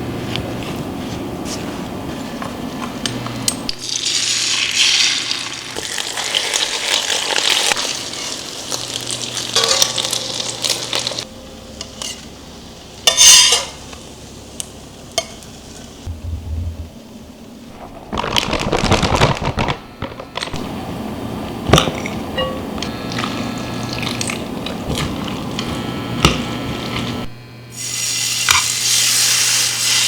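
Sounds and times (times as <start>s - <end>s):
food sizzling in a pan: 3.8s - 11.2s, 25.8s - 30.0s.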